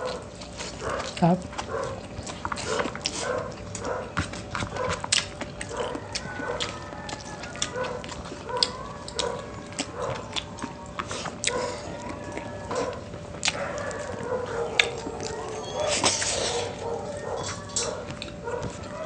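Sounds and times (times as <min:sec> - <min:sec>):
chewing and mouth smacking: 0:00.0 - 0:19.0.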